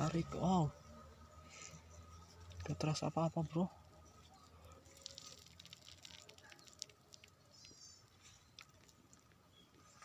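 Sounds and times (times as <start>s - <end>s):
faint ticks and rustles: 4.7s - 10.0s.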